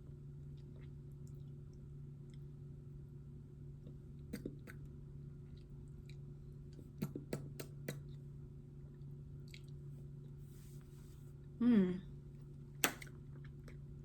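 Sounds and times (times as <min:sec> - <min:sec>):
steady low hum: 0:00.0 - 0:14.0
lips smacking: 0:07.0 - 0:08.1.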